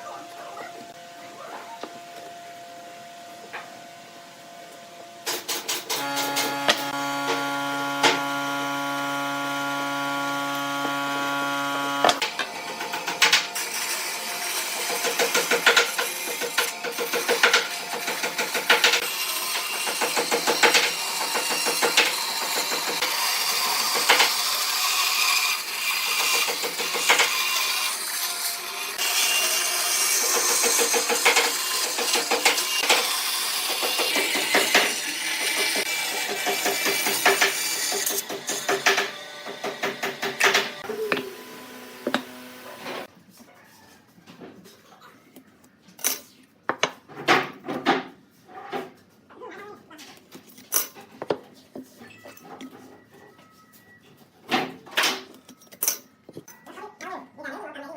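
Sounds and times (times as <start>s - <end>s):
wood lathe humming: 6.0s - 12.2s, 30.6s - 43.1s
turning tool scraping wood: 39.7s - 43.1s.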